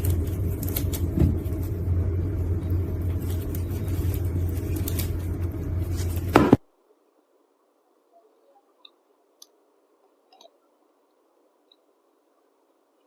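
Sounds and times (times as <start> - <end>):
low rumble: 0.0 - 6.6.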